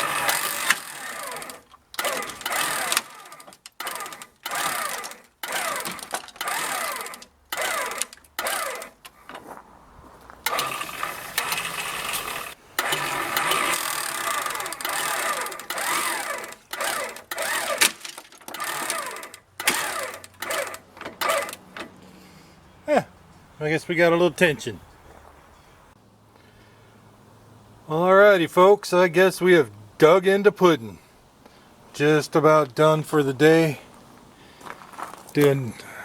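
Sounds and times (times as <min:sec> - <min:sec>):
handheld power tool running: 0:00.0 - 0:09.0, 0:10.5 - 0:21.7.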